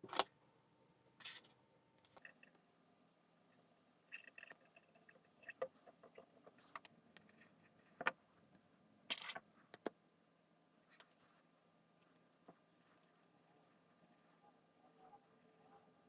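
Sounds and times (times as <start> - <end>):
clicks of small parts handled: 9.1 - 9.9.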